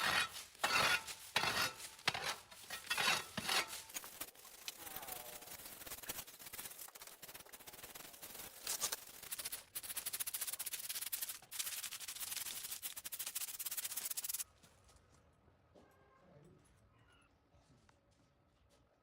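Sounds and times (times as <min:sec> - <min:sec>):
rough rasping scraping: 0:00.0 - 0:04.4.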